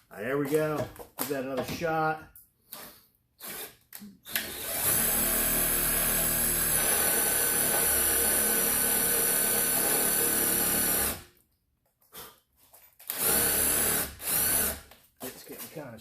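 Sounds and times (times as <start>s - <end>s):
power drill running: 4.3s - 11.2s, 13.1s - 14.8s.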